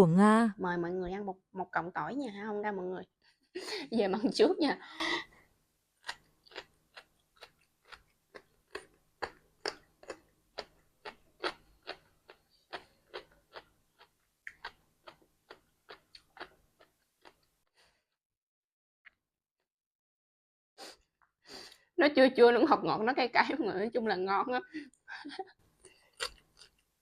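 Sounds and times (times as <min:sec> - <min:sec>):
crunching and chewing: 0:06.0 - 0:17.5, 0:25.9 - 0:26.9.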